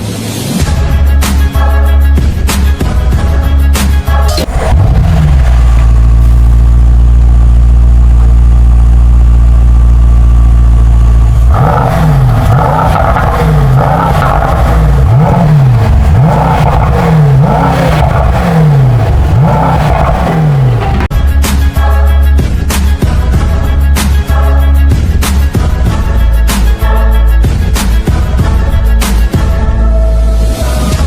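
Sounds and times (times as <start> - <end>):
car engine revving: 4.3 - 21.1.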